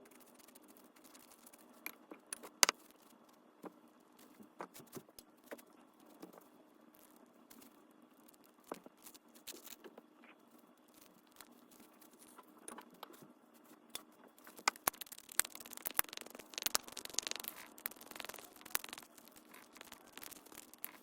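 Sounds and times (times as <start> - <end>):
faint steady hum: 0.0 - 21.0
small hard objects clicking: 14.4 - 21.0.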